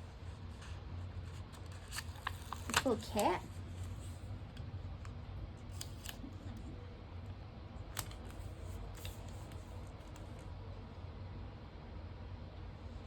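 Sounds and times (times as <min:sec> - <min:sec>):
low steady hum: 0:00.0 - 0:13.0
paper clicks and crinkles: 0:00.1 - 0:04.6, 0:05.6 - 0:06.8, 0:07.9 - 0:10.5.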